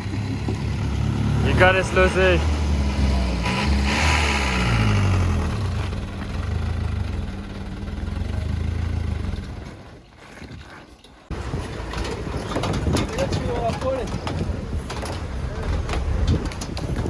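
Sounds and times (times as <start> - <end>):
vehicle engine running: 0.0 - 9.8
loud noise: 1.3 - 7.5.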